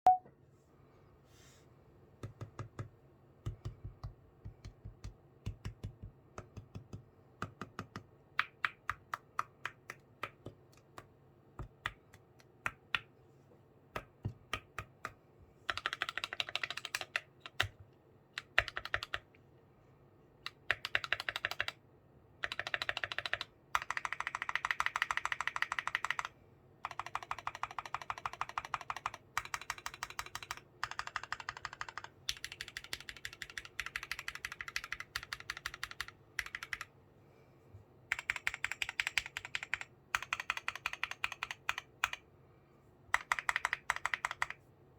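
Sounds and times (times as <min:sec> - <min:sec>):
mechanical keyboard typing: 0:14.0 - 0:17.8, 0:18.4 - 0:19.3, 0:20.5 - 0:21.8, 0:22.4 - 0:36.9, 0:38.1 - 0:42.3, 0:43.1 - 0:44.6.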